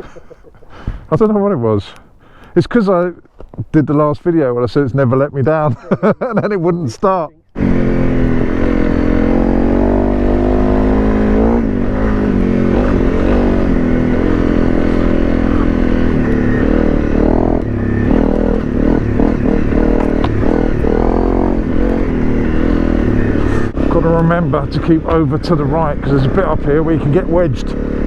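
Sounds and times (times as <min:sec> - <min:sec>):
motorcycle engine revving: 0:07.5 - 0:28.0.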